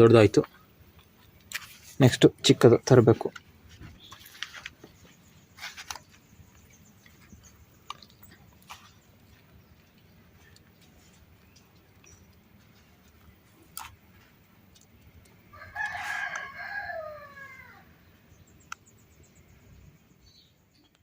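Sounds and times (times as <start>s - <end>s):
rooster crowing: 15.5s - 18.0s.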